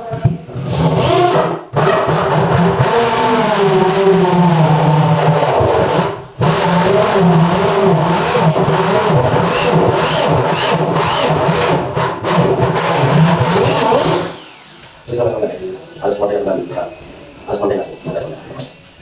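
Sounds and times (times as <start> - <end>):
electric drill boring wood: 0.6 - 15.0.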